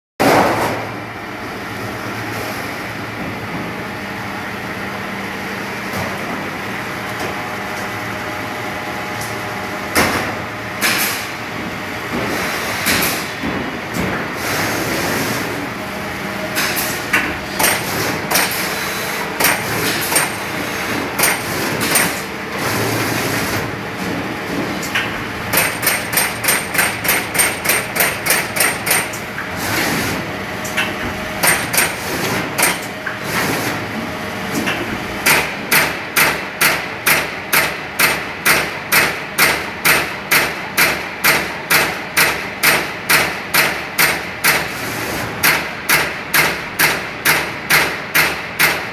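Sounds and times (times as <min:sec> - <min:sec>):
machine hum: 0:14.6 - 0:34.5.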